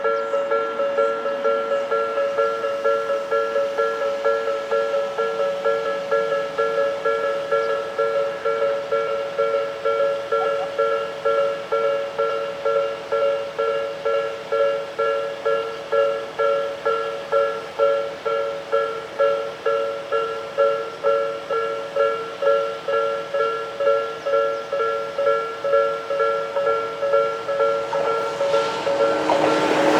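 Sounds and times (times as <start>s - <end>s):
railroad crossing bell ringing: 0.0s - 29.9s.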